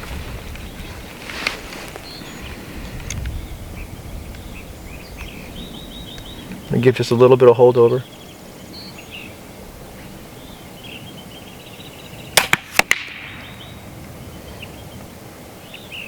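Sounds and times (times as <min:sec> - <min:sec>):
faint bird chirps: 0:03.2 - 0:12.4
air pistol shot crack: 0:12.4 - 0:13.6.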